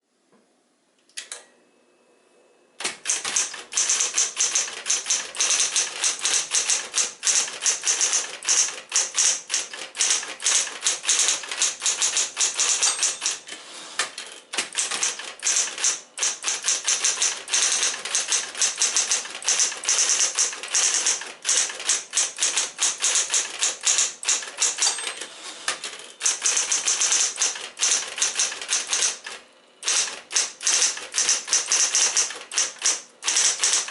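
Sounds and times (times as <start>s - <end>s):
faint steady hum: 0.0s - 3.0s
click: 1.0s - 1.5s
electric typewriter typing fast: 2.8s - 13.4s, 14.0s - 33.9s.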